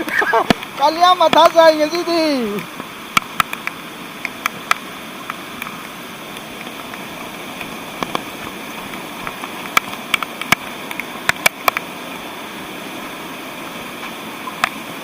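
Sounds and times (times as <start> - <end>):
sharp clicks and taps: 0.0 - 1.6
waterfall rushing: 0.0 - 15.0.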